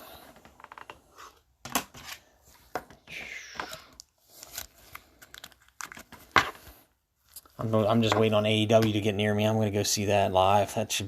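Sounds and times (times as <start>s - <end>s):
cards and packaging rustling: 1.7s - 9.1s.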